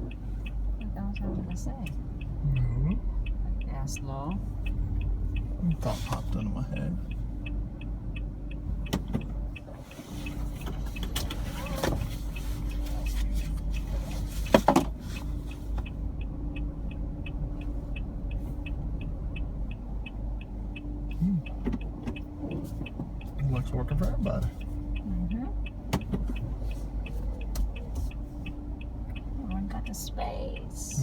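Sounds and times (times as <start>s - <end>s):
car engine and road rumble: 0.0s - 31.0s
turn signal ticking: 0.0s - 31.0s.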